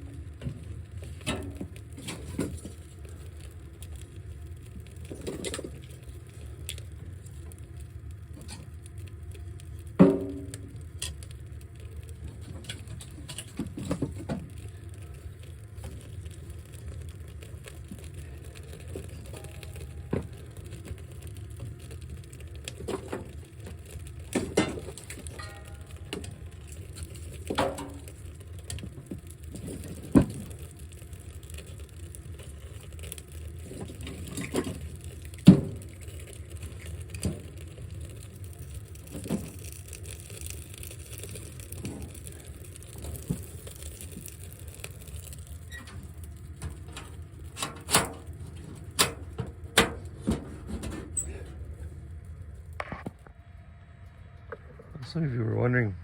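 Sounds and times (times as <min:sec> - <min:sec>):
steady low rumble: 0:39.8 - 0:56.0.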